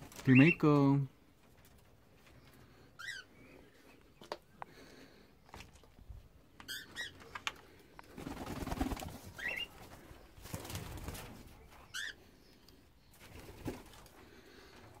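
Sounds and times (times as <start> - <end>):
wing flapping: 8.1 - 11.6, 13.2 - 14.2
cockatiels chirping: 9.4 - 9.7.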